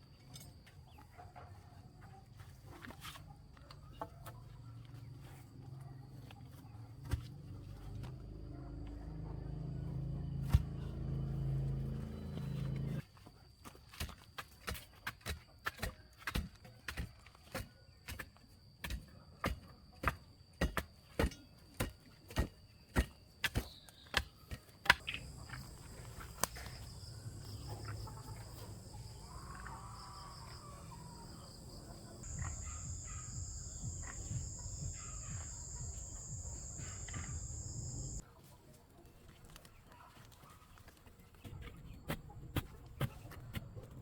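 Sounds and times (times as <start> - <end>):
insect drone: 25.0 - 38.2.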